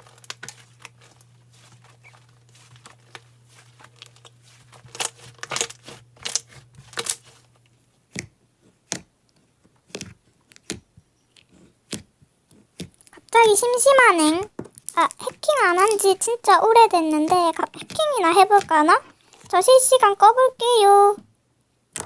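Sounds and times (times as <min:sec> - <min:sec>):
slime crackling and popping: 0:00.0 - 0:07.4, 0:12.7 - 0:19.5.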